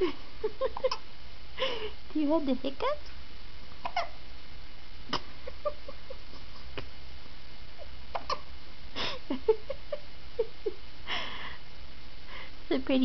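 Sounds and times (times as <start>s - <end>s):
baby hiccuping: 0.8s - 1.0s, 3.8s - 4.2s, 8.1s - 8.5s.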